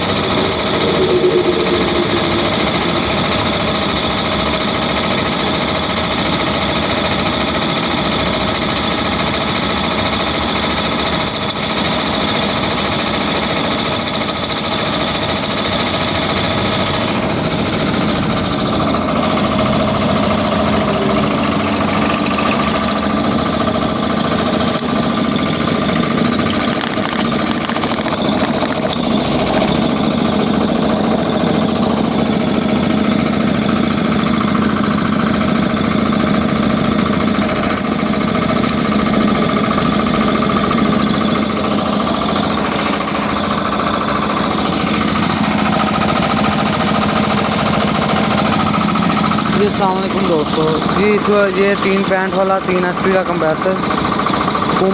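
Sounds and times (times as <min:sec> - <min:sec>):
air compressor running: 0:16.0 - 0:54.9.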